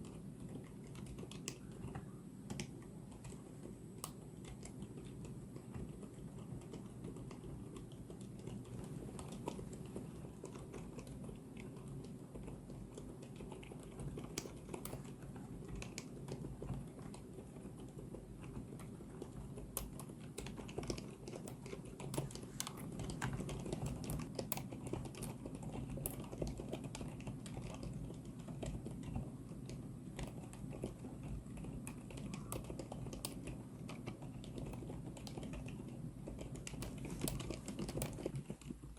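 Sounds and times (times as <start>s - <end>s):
rapid keyboard typing: 0.0s - 38.9s.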